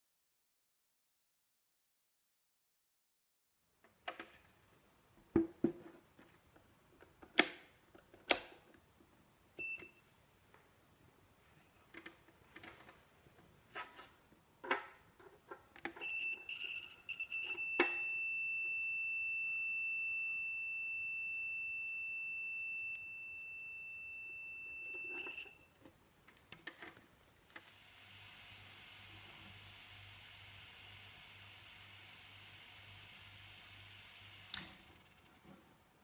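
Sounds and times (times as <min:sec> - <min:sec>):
multimeter beep: 0:09.6 - 0:10.0, 0:16.0 - 0:25.7.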